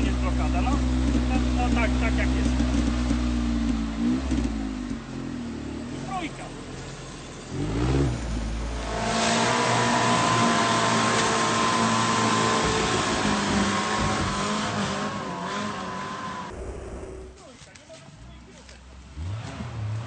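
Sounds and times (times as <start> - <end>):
vehicle engine revving hard: 7.5 - 17.3, 19.2 - 20.0.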